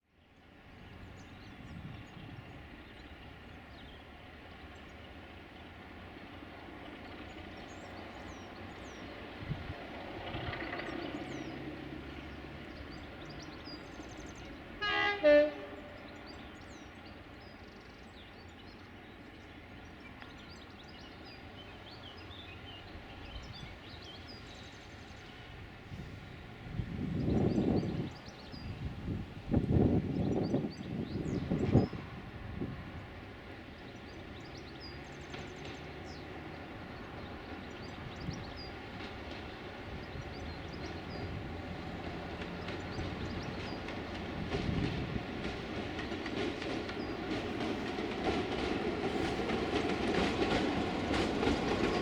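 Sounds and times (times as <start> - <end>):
locomotive horn blast: 14.8 - 16.1.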